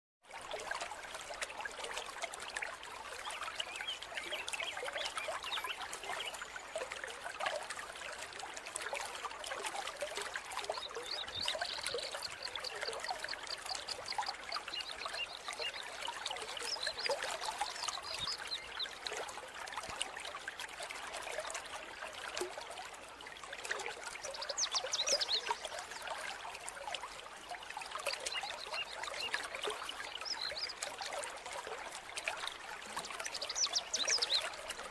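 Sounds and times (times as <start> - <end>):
stream trickling over rocks: 0.2 - 34.9.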